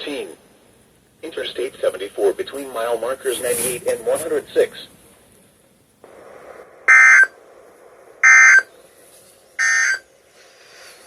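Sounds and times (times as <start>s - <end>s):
faint radio hiss: 0.0s - 11.0s
digital data tone bursts: 6.9s - 7.4s, 8.2s - 8.7s, 9.6s - 10.1s.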